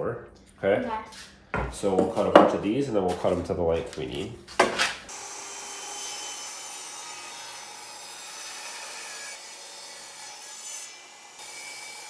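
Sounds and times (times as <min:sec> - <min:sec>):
saw cutting wood: 0:04.6 - 0:12.0.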